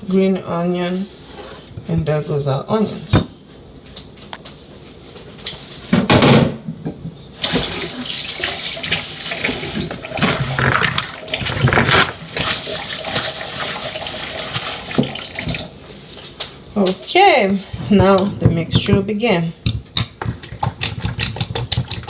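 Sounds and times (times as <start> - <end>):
tap water running into sink: 7.4 - 15.8.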